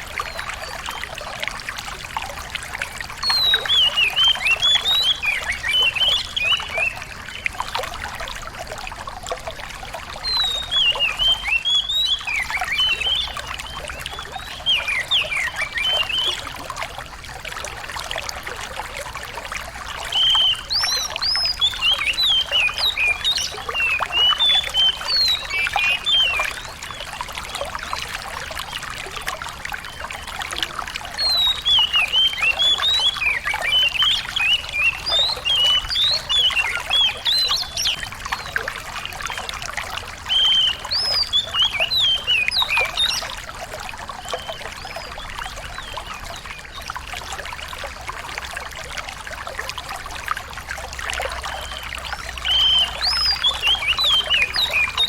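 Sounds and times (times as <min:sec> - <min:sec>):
trickling water: 0:00.0 - 0:55.0
songbird chirping and whistling: 0:10.3 - 0:16.4, 0:20.1 - 0:26.8, 0:31.2 - 0:38.5, 0:40.3 - 0:43.3, 0:51.6 - 0:55.0.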